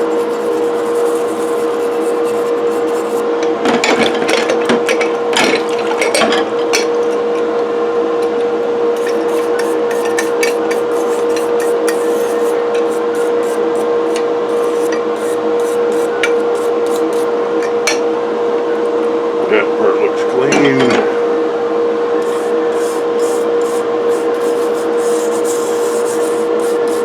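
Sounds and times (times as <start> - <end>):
metal scratching on wire wheel: 0.0 - 3.3, 9.0 - 17.3, 22.2 - 27.0.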